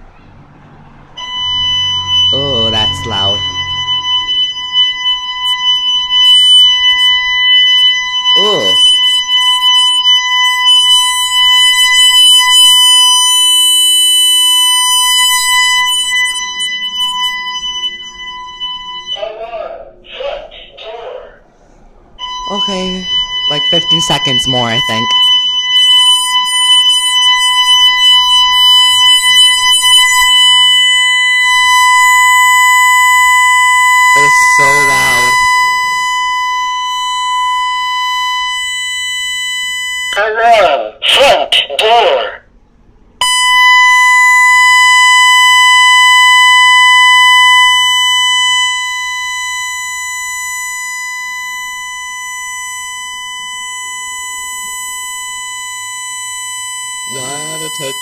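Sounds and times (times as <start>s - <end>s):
alarm siren steady high tone: 0.0s - 21.4s, 22.1s - 42.4s, 43.2s - 58.0s.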